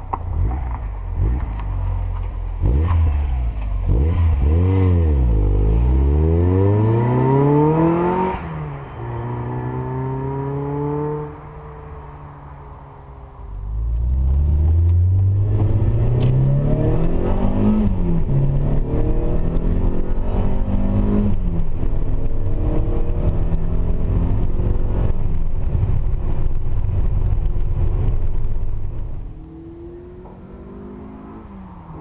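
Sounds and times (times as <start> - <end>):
car engine revving hard: 2.6 - 8.6, 14.3 - 21.4.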